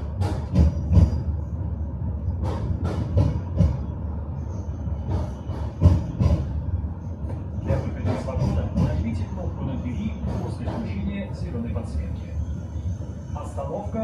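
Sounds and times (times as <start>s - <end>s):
wheels clacking over rail joints: 0.0s - 1.5s, 2.2s - 4.0s, 5.0s - 11.5s
tram rumbling on rails: 0.0s - 14.0s.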